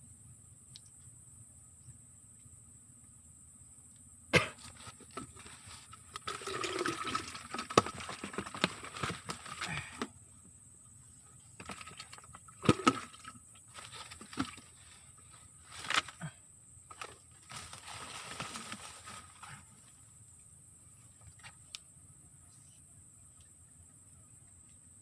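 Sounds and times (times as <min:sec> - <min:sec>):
water splashing and sloshing: 0:05.1 - 0:09.7, 0:11.6 - 0:14.9.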